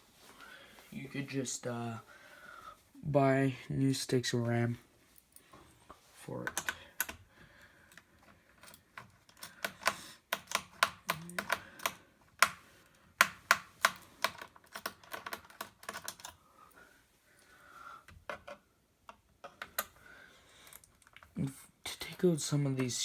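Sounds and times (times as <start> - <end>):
screwdriver clicking on plastic: 8.6 - 12.6.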